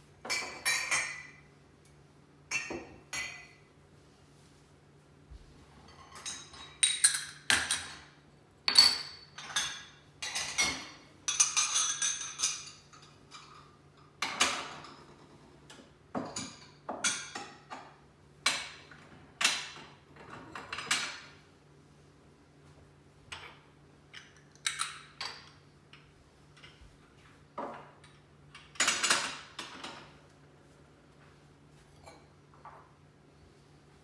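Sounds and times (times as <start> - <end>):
dishes and cutlery clinking: 0.2 - 1.5, 2.5 - 3.7, 8.7 - 15.2.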